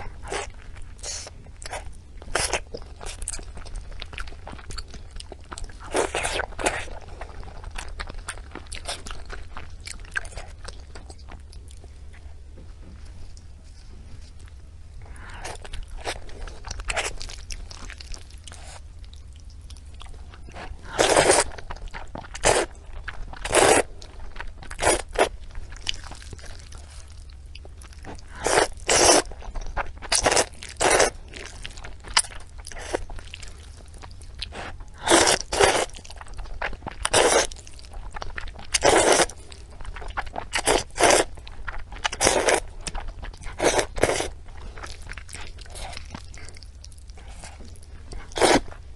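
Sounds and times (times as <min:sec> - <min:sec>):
loud chewing and bites: 0:15.4 - 0:48.8.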